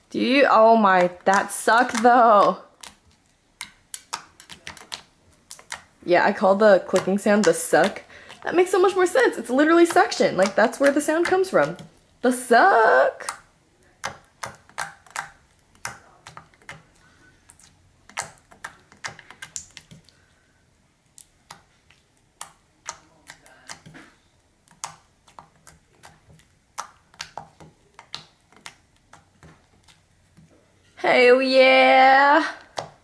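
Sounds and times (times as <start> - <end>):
slime clicking and popping: 0.9 - 5.9, 13.2 - 20.2, 21.0 - 24.0, 24.6 - 30.1.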